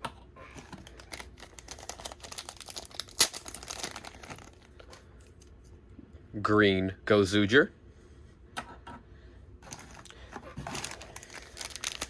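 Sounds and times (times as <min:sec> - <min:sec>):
plastic packaging crinkling: 0:00.5 - 0:05.0, 0:09.6 - 0:12.0.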